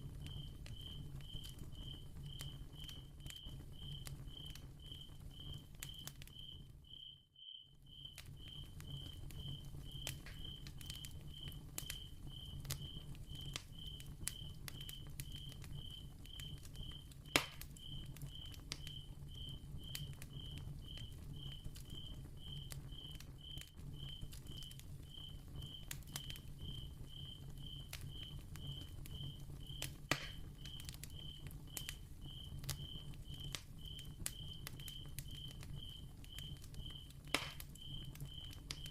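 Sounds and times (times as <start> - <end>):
cricket chirping: 0.2 - 17.0, 17.8 - 38.9
candle crackling: 7.9 - 38.9
candle pops: 17.3 - 17.7, 29.8 - 31.9, 37.3 - 38.9.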